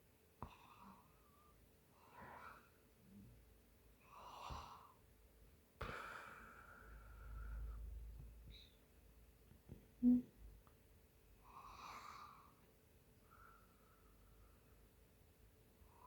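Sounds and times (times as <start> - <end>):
woman breathing and snoring softly: 0.4 - 5.1, 5.8 - 8.8, 11.4 - 15.0.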